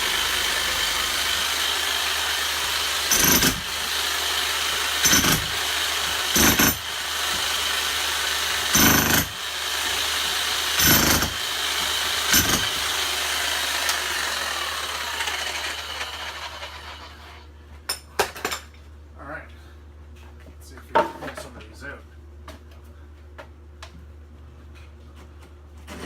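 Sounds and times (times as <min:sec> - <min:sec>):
demolition hammer on brick: 0:03.0 - 0:03.7, 0:05.0 - 0:05.6, 0:06.3 - 0:06.9, 0:08.7 - 0:09.4, 0:10.8 - 0:11.4, 0:12.3 - 0:12.8.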